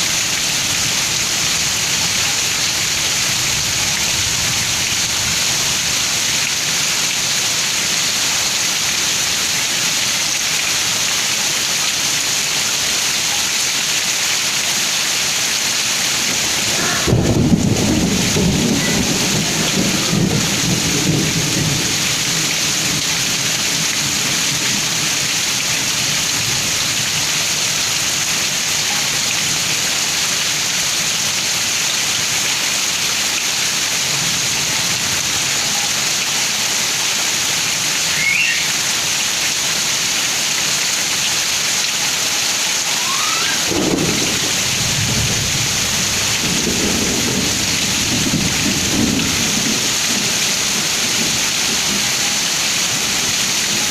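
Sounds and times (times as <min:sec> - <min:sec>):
heavy rain pouring: 0:00.0 - 0:53.9
low thunder rumbling: 0:16.4 - 0:22.3, 0:43.6 - 0:52.0.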